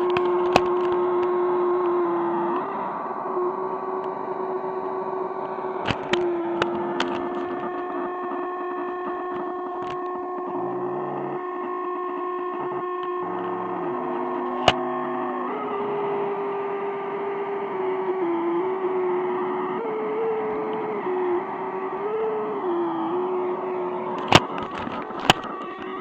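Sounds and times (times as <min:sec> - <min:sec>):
electronic feedback-like drone: 0:00.0 - 0:26.0
low synth notes stepping in pitch: 0:00.0 - 0:26.0
sharp clicks: 0:05.8 - 0:08.1, 0:12.6 - 0:14.9, 0:24.1 - 0:26.0.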